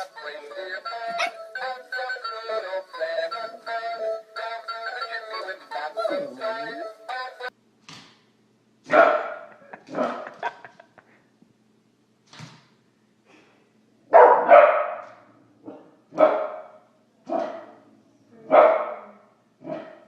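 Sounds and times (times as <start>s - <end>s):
dog barking: 1.2s - 1.4s, 8.9s - 10.3s, 14.1s - 17.8s, 18.5s - 20.0s.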